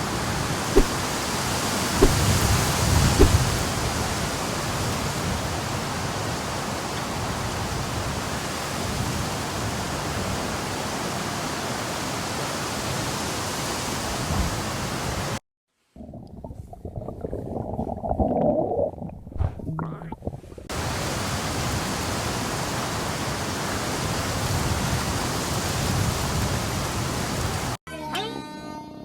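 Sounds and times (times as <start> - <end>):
stomach growling: 16.0 - 20.7.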